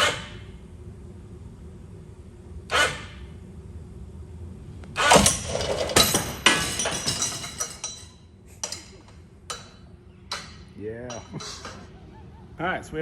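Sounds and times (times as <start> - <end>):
metal clattering and clinking: 5.0 - 12.0.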